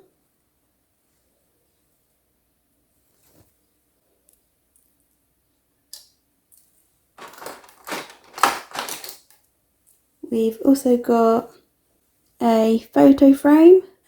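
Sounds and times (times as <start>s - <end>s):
plastic packaging crinkling: 7.2s - 9.4s.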